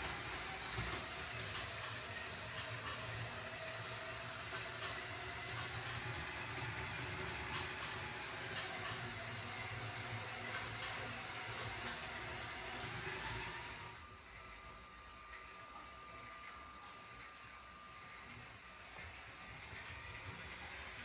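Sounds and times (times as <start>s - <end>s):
wheels rolling on plastic track: 0.0s - 14.6s
toy train motor running: 0.0s - 21.0s.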